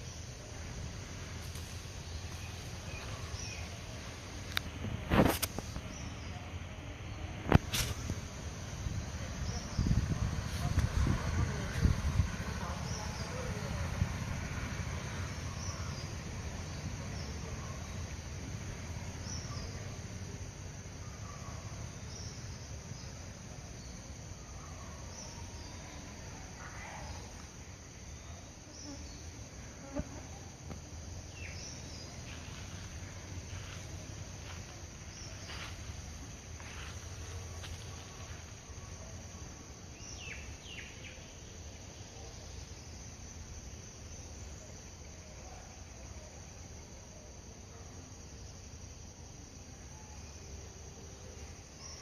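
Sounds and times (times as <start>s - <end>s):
steady low rumble: 0.0s - 20.6s
insects chirping: 0.0s - 52.0s.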